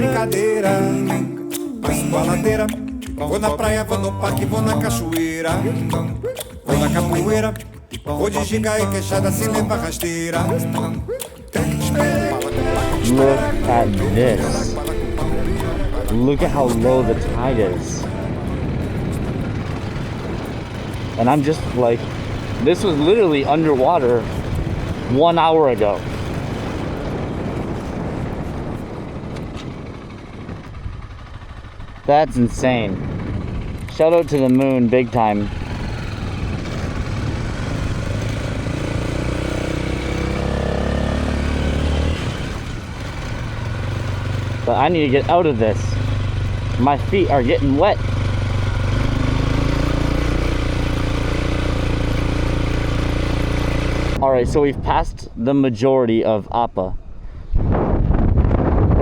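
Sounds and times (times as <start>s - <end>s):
motorcycle engine running: 0.0s - 54.2s
wind noise on microphone: 12.2s - 49.2s, 54.1s - 55.5s, 56.6s - 59.0s.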